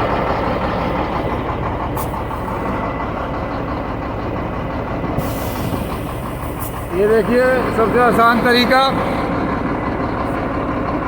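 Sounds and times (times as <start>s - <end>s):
truck engine running: 0.0s - 11.0s.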